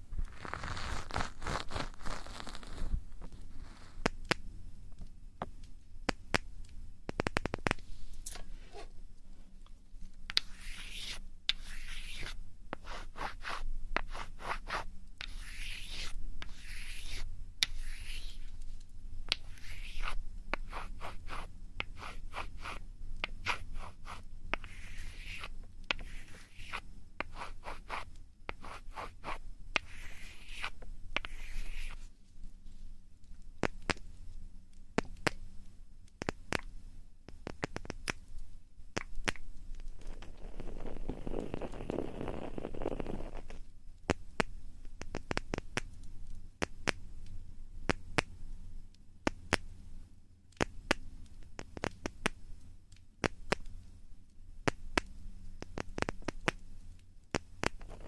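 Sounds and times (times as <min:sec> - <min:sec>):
scratching and rubbing strokes: 0:00.0 - 0:04.4, 0:07.3 - 0:09.0, 0:10.3 - 0:32.9, 0:39.2 - 0:43.7, 0:57.4 - 0:58.0.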